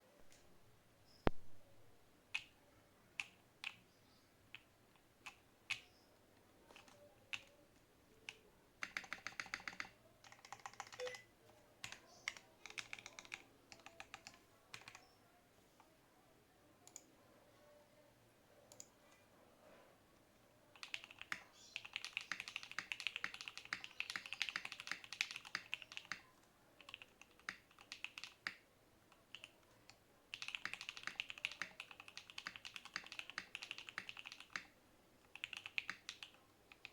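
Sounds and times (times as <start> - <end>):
mechanical keyboard typing: 6.7 - 7.6, 8.3 - 15.0, 20.8 - 36.9.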